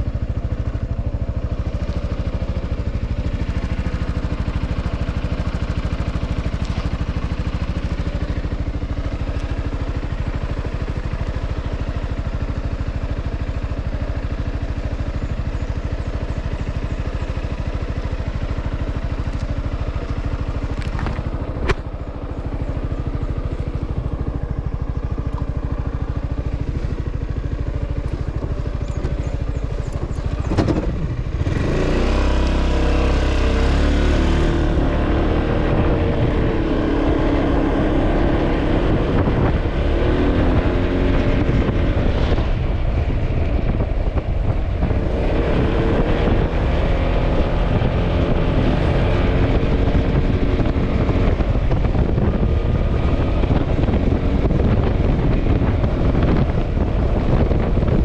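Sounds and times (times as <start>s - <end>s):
scooter engine running: 0.0s - 58.0s.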